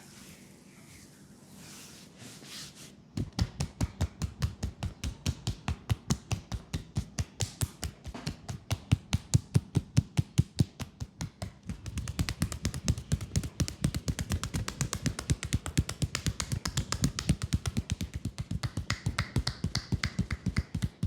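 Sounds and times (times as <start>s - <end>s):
soft rubbing: 0.0s - 3.4s
percussive massage strikes: 3.2s - 21.0s.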